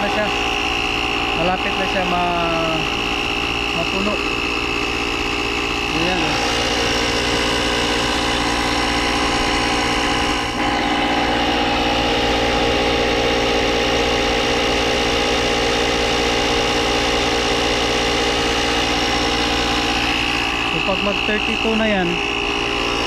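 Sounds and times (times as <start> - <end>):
tire inflator compressor running: 0.0 - 23.0.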